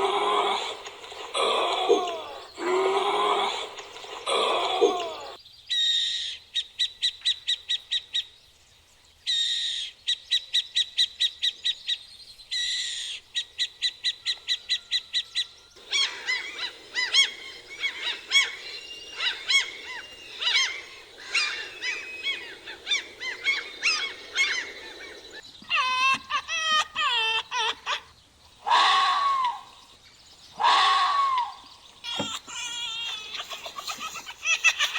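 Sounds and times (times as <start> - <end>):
birds chirping and whistling: 0.0 - 34.9
fast repeated high bird call: 12.6 - 34.9.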